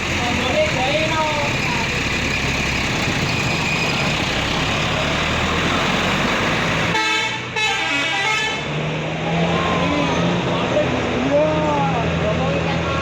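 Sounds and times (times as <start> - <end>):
bus engine rumbling: 0.0 - 13.0
multi-tone bus horn: 6.9 - 8.8.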